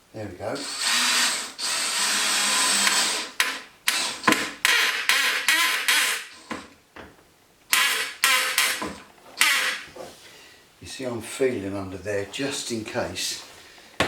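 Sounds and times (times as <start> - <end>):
drill-driver driving screw: 0.6 - 6.6, 7.7 - 9.9.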